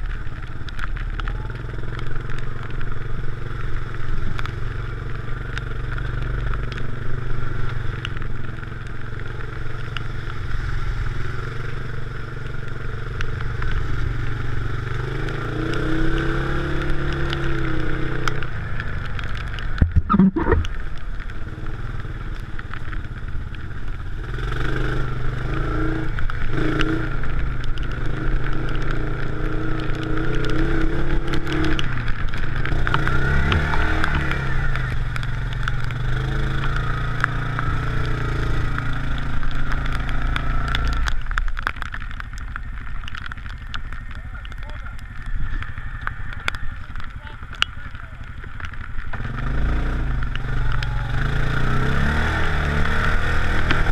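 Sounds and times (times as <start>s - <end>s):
off-road vehicle engine revving: 32.6s - 41.0s, 49.1s - 53.9s.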